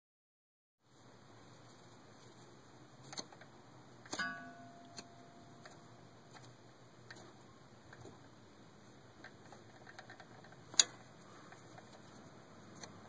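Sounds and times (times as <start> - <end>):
metallic clink: 4.2 - 5.4.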